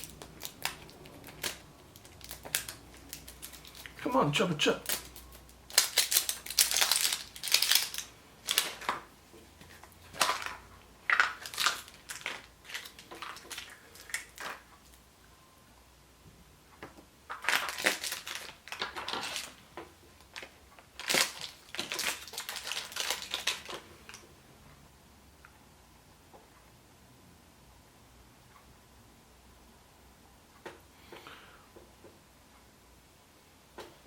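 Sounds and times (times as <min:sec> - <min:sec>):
wrapper crinkling: 0:00.0 - 0:09.1, 0:09.7 - 0:14.7, 0:17.3 - 0:19.6, 0:20.2 - 0:24.2.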